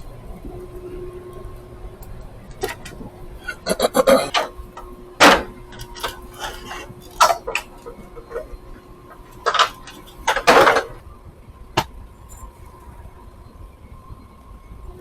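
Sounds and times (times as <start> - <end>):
faint steady hum: 0.0 - 15.0
rummaging through small hard items: 5.3 - 11.0.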